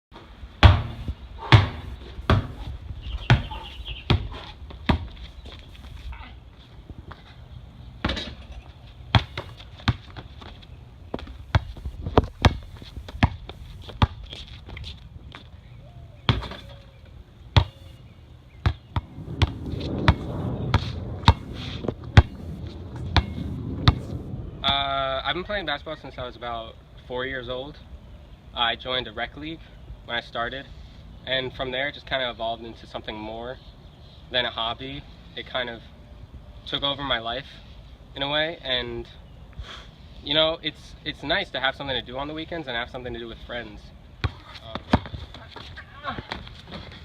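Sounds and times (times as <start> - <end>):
basketball bouncing on hard court: 0.6 - 2.6, 3.2 - 5.1, 9.1 - 10.2, 11.2 - 14.2, 17.6 - 17.8, 18.6 - 22.4, 23.0 - 24.2, 44.2 - 45.4.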